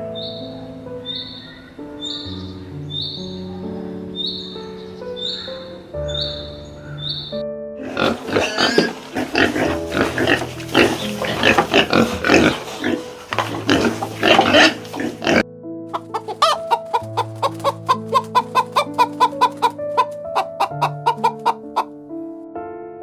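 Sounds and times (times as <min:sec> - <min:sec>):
background music: 0:00.0 - 0:23.0
animal calling: 0:05.2 - 0:15.4, 0:16.0 - 0:21.9.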